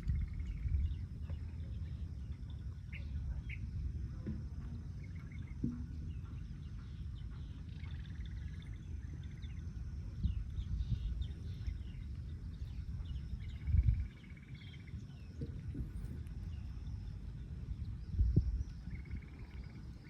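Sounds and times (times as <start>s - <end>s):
steady low rumble: 0.0s - 20.0s
birds chirping: 4.6s - 20.0s.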